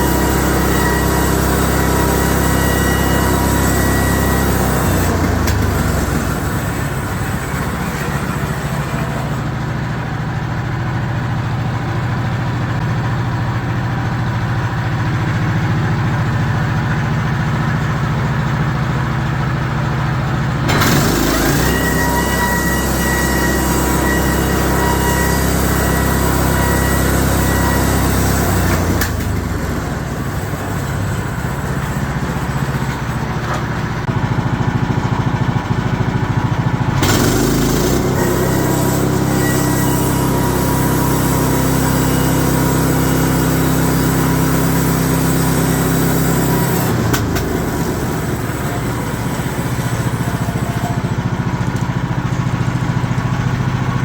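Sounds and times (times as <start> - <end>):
small gas engine running: 0.0 - 54.0.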